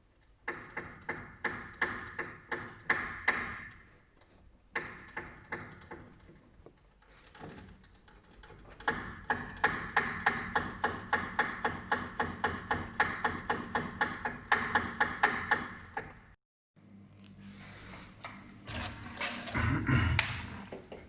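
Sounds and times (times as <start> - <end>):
washing machine knocking: 8.8 - 16.2.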